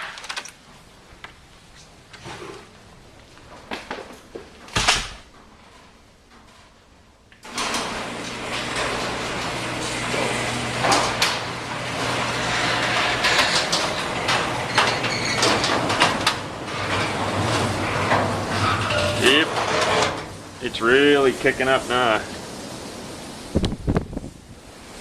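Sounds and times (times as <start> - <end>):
storm wind on microphone: 19.5 - 25.0.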